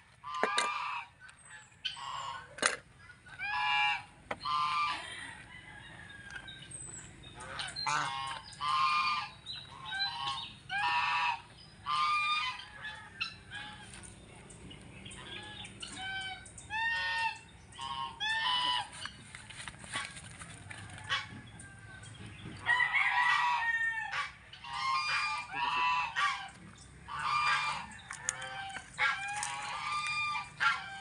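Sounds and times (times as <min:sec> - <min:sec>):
poultry honking: 0:01.8 - 0:02.6, 0:03.3 - 0:05.2, 0:07.4 - 0:14.0, 0:15.1 - 0:19.1, 0:22.6 - 0:31.0.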